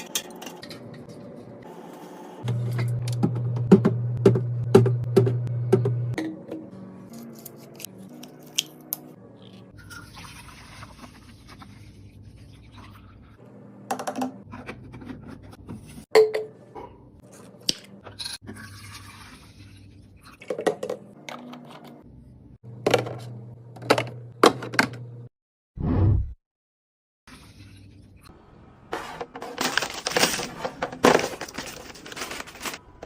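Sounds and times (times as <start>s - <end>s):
snacks and drinks set down: 29.0s - 32.8s
packaging rustling: 29.4s - 32.8s.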